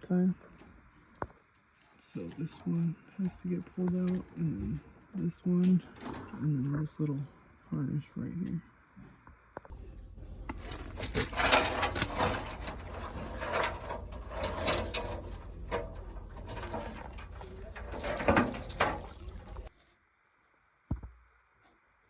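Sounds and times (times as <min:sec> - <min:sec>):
wire connectors clicking and rattling: 0:09.7 - 0:19.7.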